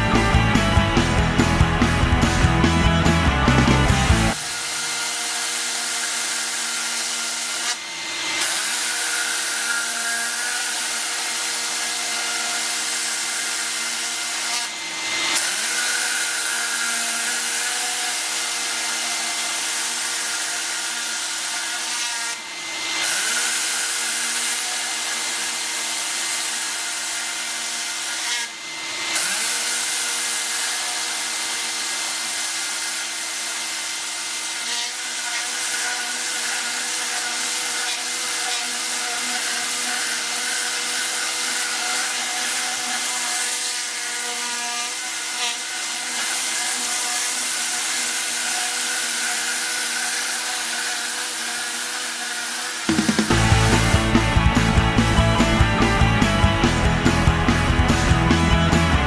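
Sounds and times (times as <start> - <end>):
machine hum: 0.0 - 4.4, 52.9 - 59.0.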